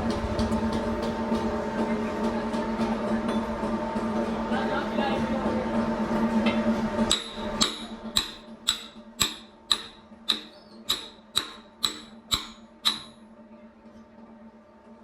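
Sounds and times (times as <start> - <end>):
steady low hum: 0.0 - 13.3
hammer striking metal: 7.1 - 13.2.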